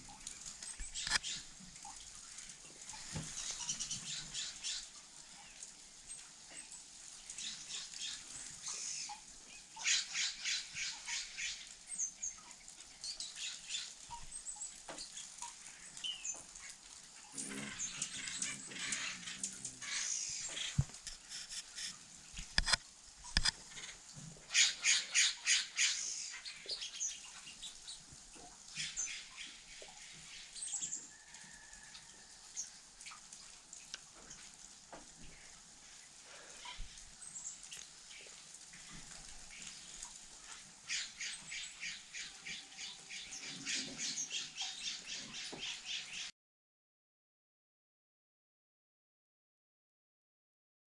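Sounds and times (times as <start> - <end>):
small birds chirping: 0.0 - 2.0, 2.7 - 22.0, 23.2 - 31.1, 35.2 - 46.3.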